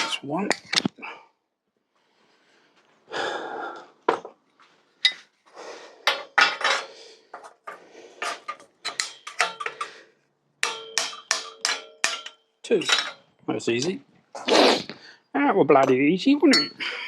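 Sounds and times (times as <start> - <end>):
metal scrape: 6.0 - 10.0, 10.6 - 13.9
hammer striking metal tool: 8.8 - 9.8, 10.6 - 13.3, 15.8 - 16.8.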